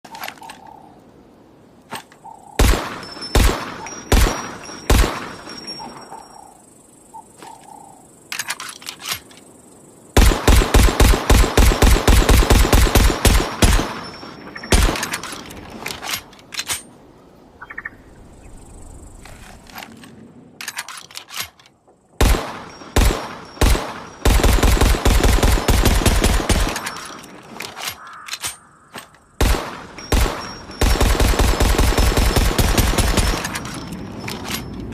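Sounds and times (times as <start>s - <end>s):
single gunshots: 2.6s - 5.4s, 10.2s - 14.1s, 22.2s - 26.9s, 29.4s - 33.6s
automatic gunfire bursts: 10.2s - 14.1s, 22.2s - 27.0s, 29.4s - 33.6s.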